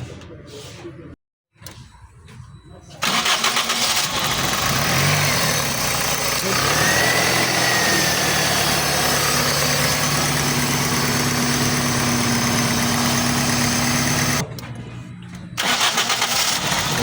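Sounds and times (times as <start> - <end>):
car engine idling: 3.0 - 14.4.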